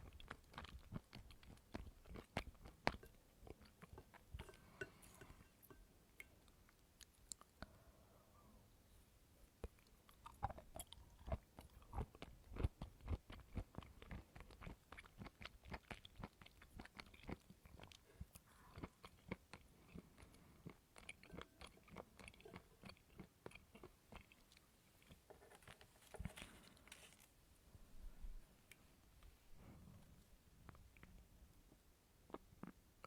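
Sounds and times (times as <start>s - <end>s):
person chewing coconut crunches: 0.0s - 4.7s, 9.7s - 27.0s.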